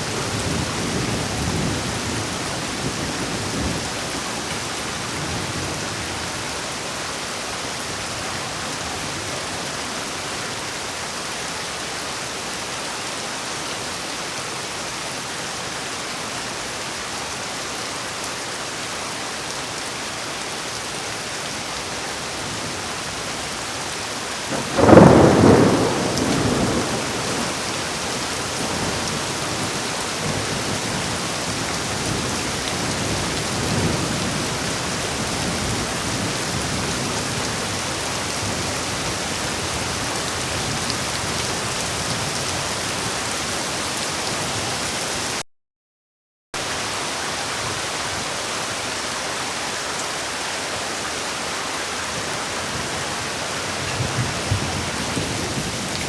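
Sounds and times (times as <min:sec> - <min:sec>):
heavy rain: 0:00.0 - 0:45.4, 0:46.6 - 0:56.0
loud thunder clap: 0:24.5 - 0:27.6.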